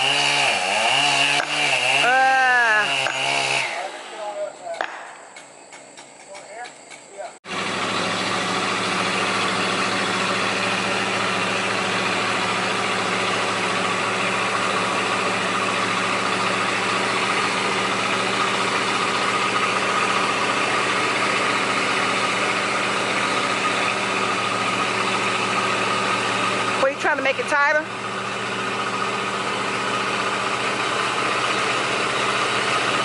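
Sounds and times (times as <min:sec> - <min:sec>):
engine running steadily: 0:00.0 - 0:04.9, 0:05.9 - 0:33.0.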